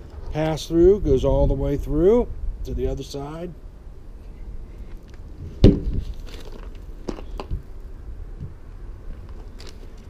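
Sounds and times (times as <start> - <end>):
low outdoor rumble: 0.0 - 10.0
loud ringing thump: 5.6 - 6.0.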